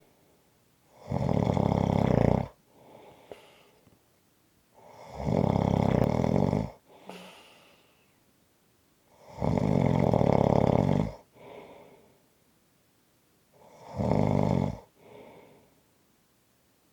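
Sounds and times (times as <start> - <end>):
quiet breath: 0.0 - 1.8, 2.4 - 4.1, 6.6 - 8.4, 11.1 - 12.4, 13.5 - 14.0, 14.7 - 16.0
loud snoring: 0.9 - 2.6, 4.8 - 7.3, 9.2 - 11.2, 13.6 - 14.9.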